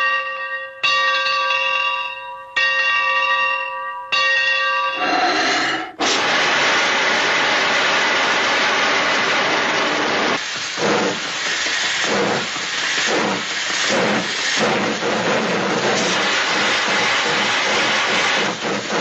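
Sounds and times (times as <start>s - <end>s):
large bell ringing: 0.0s - 5.4s
steam hissing: 5.0s - 19.0s.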